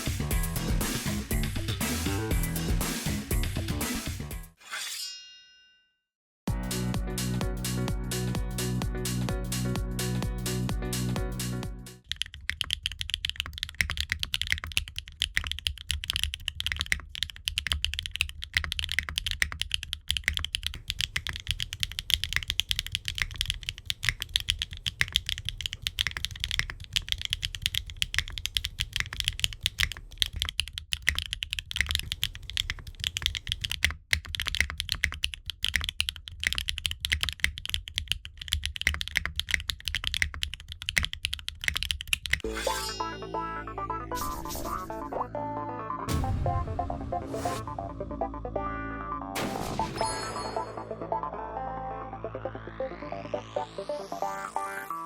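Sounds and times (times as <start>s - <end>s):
mechanical keyboard typing: 12.0s - 42.4s.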